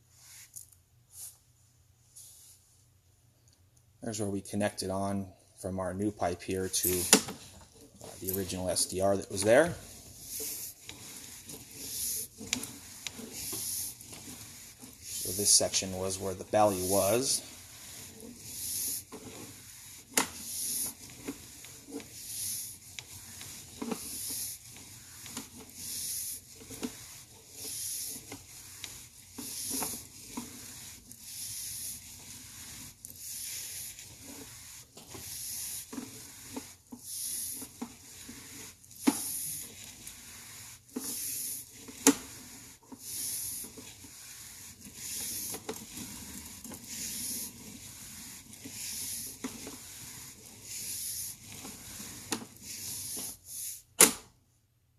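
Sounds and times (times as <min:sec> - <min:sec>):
rhythmic hiss of cable feeding: 0:05.8 - 0:54.0.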